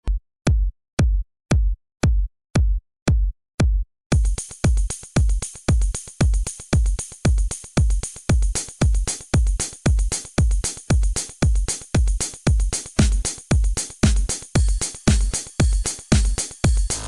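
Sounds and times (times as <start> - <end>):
electronic music with kick drum: 0.0 - 17.0.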